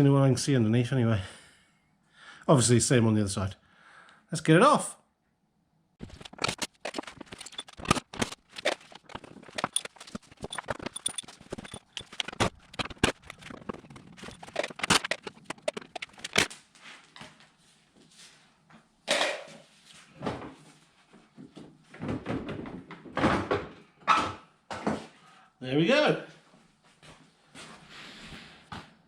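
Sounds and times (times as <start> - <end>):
loud plastic clatters: 6.0 - 16.5.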